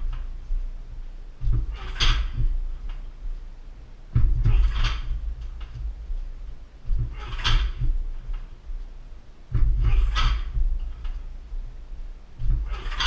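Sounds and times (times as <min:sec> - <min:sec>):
kicks thudding into tyre: 0:04.1 - 0:06.2.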